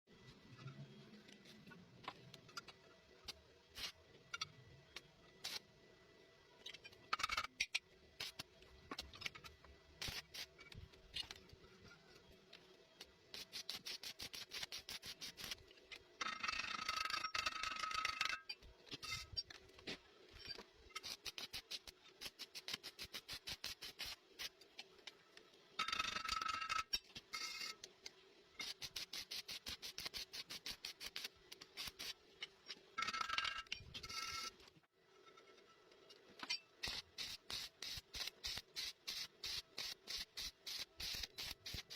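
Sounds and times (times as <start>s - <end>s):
welding arc crackling: 10.0s - 10.5s, 13.0s - 15.6s, 21.0s - 24.5s, 28.6s - 32.2s, 36.8s - 41.9s.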